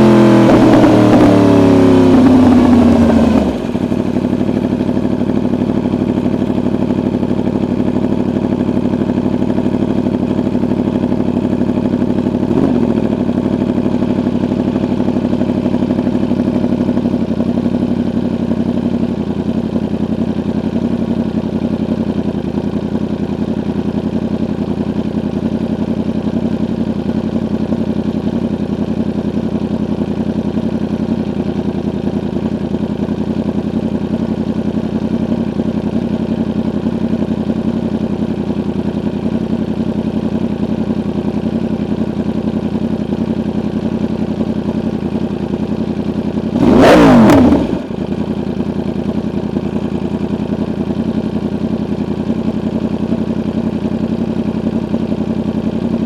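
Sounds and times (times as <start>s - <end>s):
motorcycle engine revving: 0.0s - 17.7s, 31.6s - 56.0s
motorcycle engine idling: 0.0s - 56.0s.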